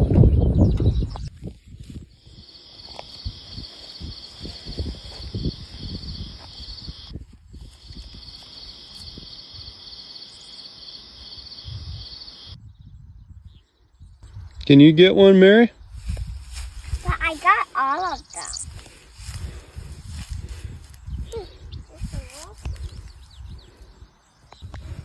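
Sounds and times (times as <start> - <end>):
high-pitched insect trill: 1.8 - 12.6, 16.0 - 24.0.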